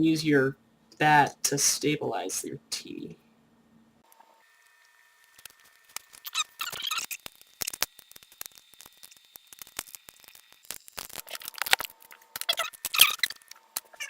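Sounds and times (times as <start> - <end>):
plastic pieces clicking: 5.3 - 14.0
plastic scraping and squeaking: 5.3 - 14.0.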